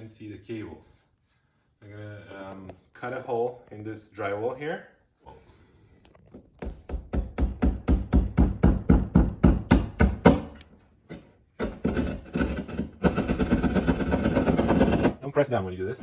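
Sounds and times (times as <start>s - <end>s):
hand saw cutting drywall: 11.1s - 15.2s.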